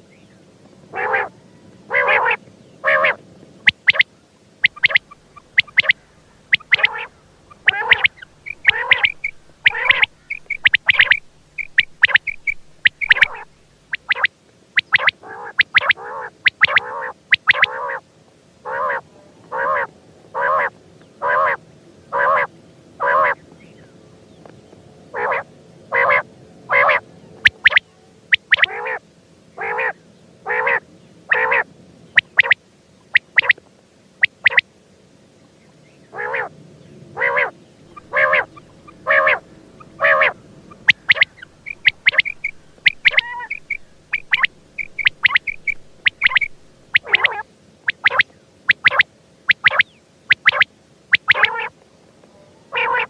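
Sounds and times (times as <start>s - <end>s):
quail calling: 0.9s - 18.0s, 18.6s - 23.4s, 25.1s - 29.0s, 29.6s - 33.6s, 34.2s - 34.6s, 36.1s - 36.5s, 37.2s - 51.7s, 52.7s - 53.0s
higher chirps: 3.7s - 4.0s, 4.6s - 17.8s, 26.9s - 28.7s, 37.3s - 51.6s.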